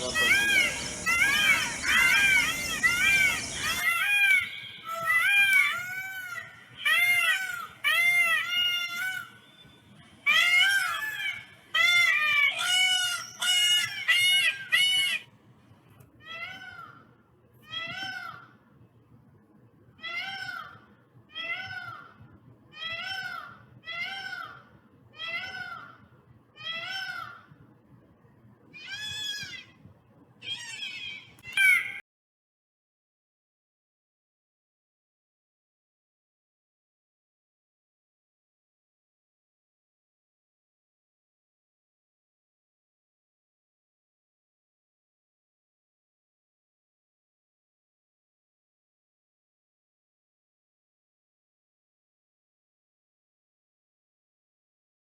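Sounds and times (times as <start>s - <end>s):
peacock calling: 0.0s - 9.7s.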